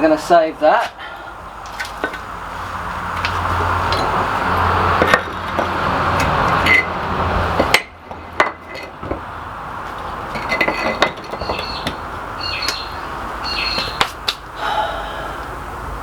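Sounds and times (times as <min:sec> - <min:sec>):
steady noisy hum: 0:00.0 - 0:16.0
metal parts clinking: 0:06.6 - 0:06.9, 0:07.7 - 0:09.2, 0:09.9 - 0:12.0.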